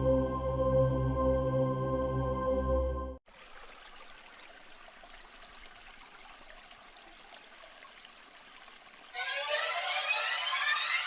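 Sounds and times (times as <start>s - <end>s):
ambient music with ringing tones: 0.0s - 3.2s, 9.2s - 11.0s.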